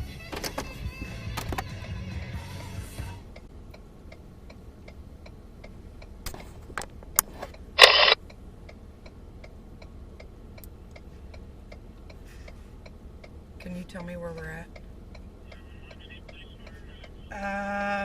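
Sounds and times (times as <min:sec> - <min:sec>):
turn signal clicking: 0:03.3 - 0:17.5.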